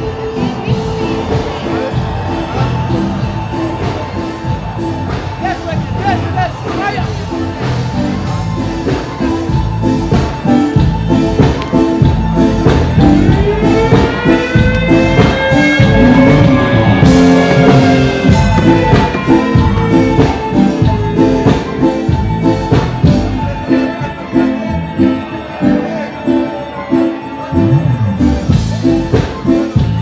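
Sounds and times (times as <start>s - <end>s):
steady drum beat: 0.0s - 23.6s, 28.2s - 30.0s.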